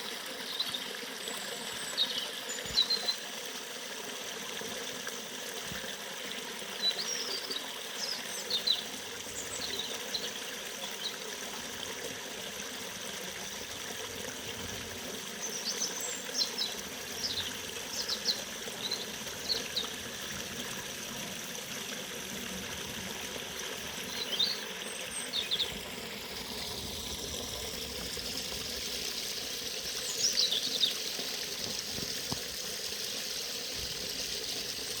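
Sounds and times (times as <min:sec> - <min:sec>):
river running: 0:00.0 - 0:35.0
birds chirping: 0:24.0 - 0:25.9.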